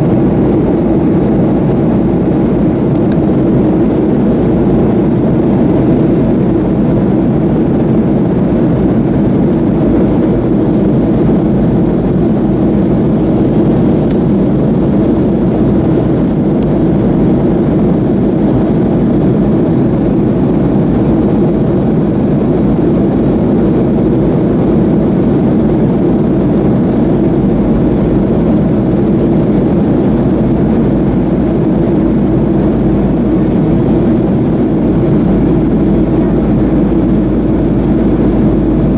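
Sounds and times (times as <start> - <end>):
airflow rush: 0.0 - 38.9
jet engine drone: 0.0 - 38.9.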